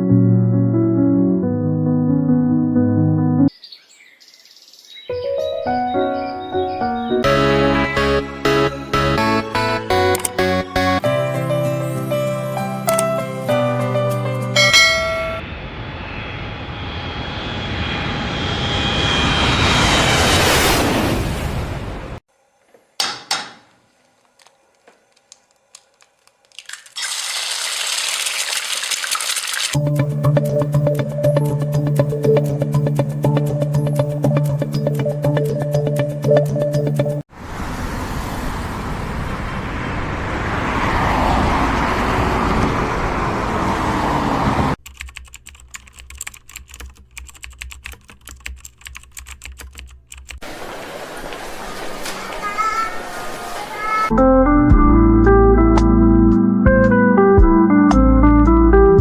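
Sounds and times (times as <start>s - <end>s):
loud rushing noise: 15.0s - 22.2s
rapid irregular sharp clicks: 44.8s - 50.4s.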